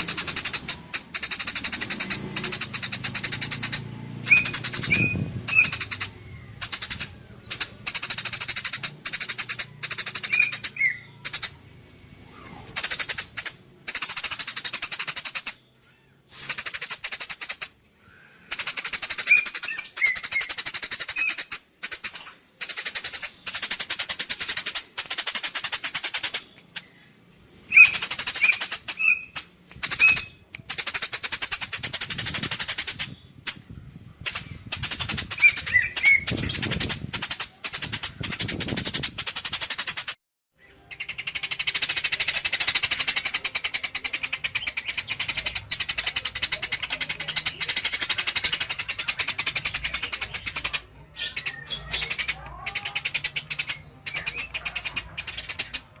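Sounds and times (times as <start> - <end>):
songbird buzzy trills: 0.0 - 56.0
clear whistled bird notes: 0.1 - 11.5, 18.0 - 21.5, 25.3 - 33.4, 34.4 - 56.0.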